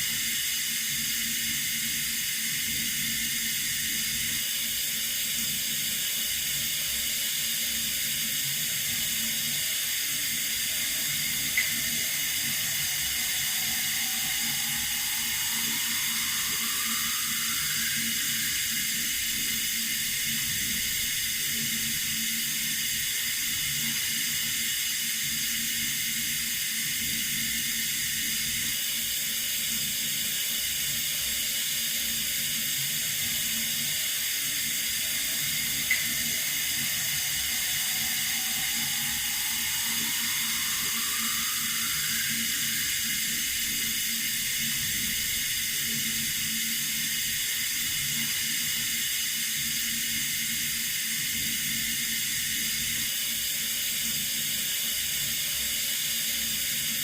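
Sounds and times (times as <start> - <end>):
water running from a tap: 0.0 - 28.7, 32.4 - 53.5
faint rising tone: 9.5 - 21.0, 33.3 - 45.4.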